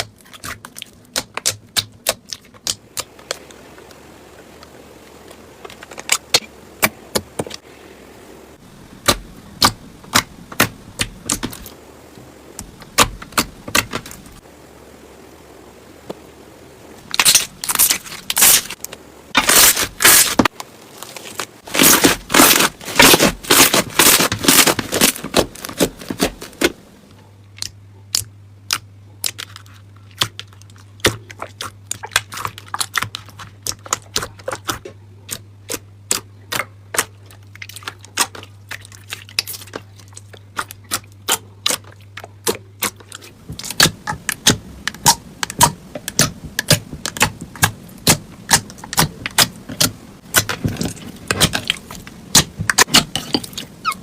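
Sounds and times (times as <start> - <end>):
slime crackling and popping: 0.0 - 3.4, 17.1 - 26.7, 27.6 - 54.0
low steady hum: 0.0 - 54.0.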